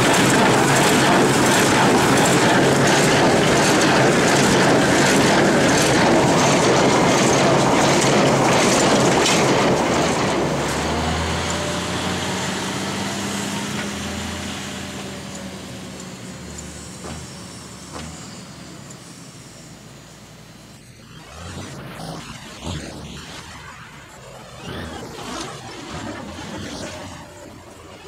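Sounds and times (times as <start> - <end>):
harvesting machinery clattering: 0.0 - 10.7.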